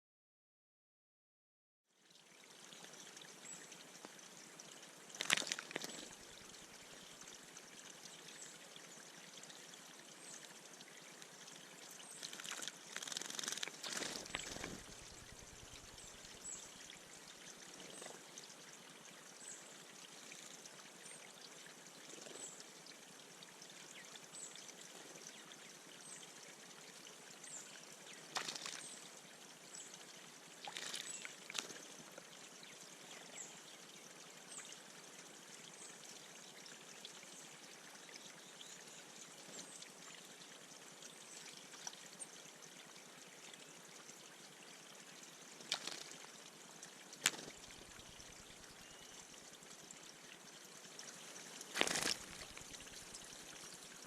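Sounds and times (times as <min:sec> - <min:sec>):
water trickling in a bird bath: 0:01.8 - 0:54.0
bird splashing in water: 0:05.2 - 0:06.1, 0:12.2 - 0:16.1, 0:28.3 - 0:28.8, 0:30.6 - 0:31.7, 0:45.6 - 0:46.2, 0:51.4 - 0:53.3.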